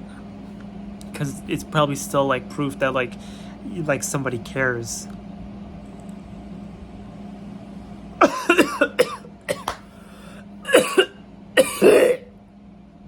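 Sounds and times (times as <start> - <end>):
air conditioner humming: 0.0 - 13.0
man coughing: 8.2 - 9.9, 10.6 - 12.3.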